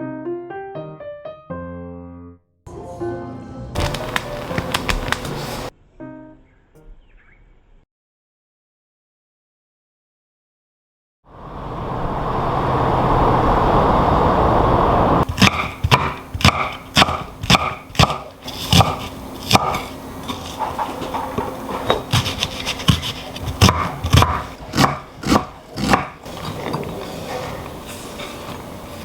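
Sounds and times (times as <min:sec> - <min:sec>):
knife chopping on wooden board: 0:15.3 - 0:27.6.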